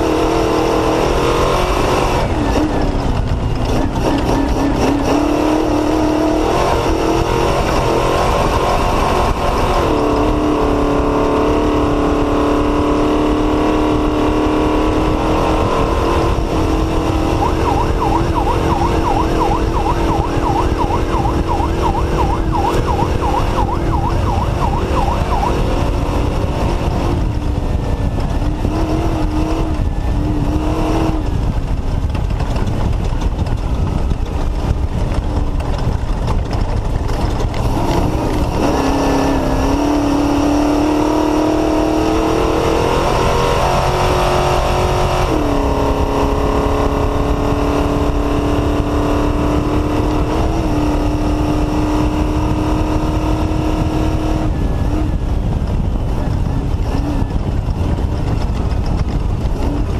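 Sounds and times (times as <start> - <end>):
race car engine revving: 0.0 - 59.9
high warbling tone: 15.8 - 26.3.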